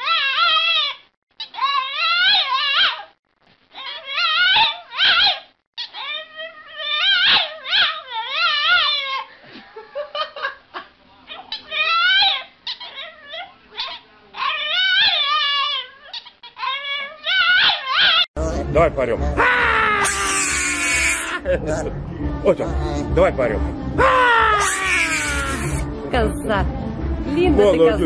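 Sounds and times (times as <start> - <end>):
dog whining and howling: 0.0 - 3.1, 3.8 - 9.3, 11.5 - 18.3.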